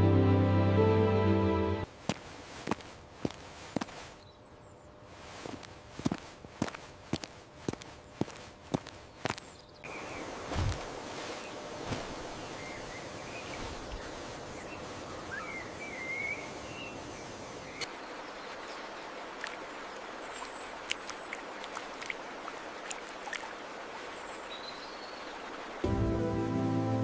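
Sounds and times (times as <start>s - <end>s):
bird chirps: 9.5s - 17.9s
rushing hiss of running water: 9.9s - 17.9s.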